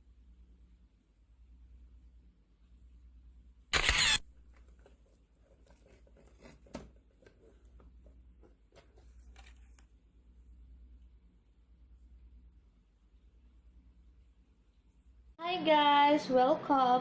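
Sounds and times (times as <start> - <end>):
faint low hum: 0.0 - 16.9
faint clicks and taps: 4.5 - 10.0.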